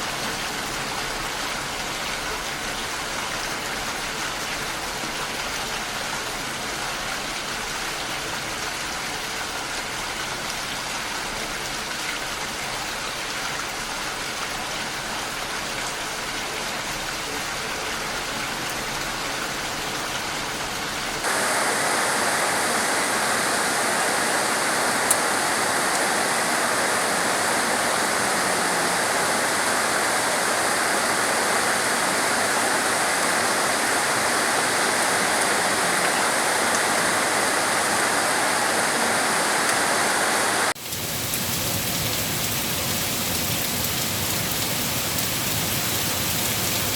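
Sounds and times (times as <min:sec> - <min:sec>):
steady rain: 0:00.0 - 0:46.9
heavy rain rushing: 0:21.1 - 0:46.9.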